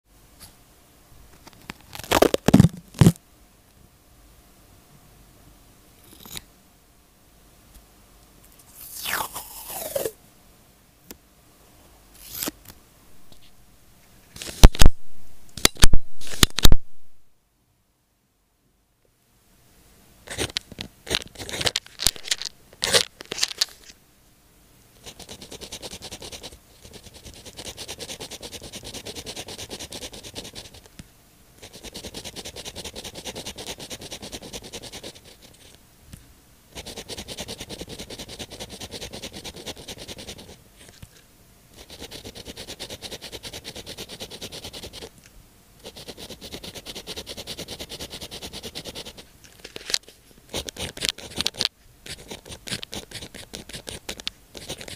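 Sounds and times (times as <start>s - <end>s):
pen scratching on paper: 25.0s - 30.8s, 31.6s - 35.7s, 36.8s - 40.6s, 41.8s - 45.1s, 45.8s - 49.2s, 50.5s - 54.9s.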